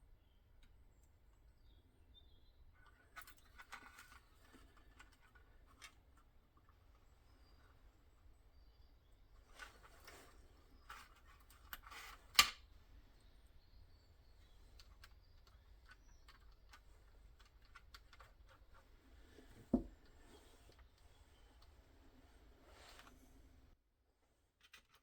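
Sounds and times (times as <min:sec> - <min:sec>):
dull knock: 0:19.7 - 0:19.9.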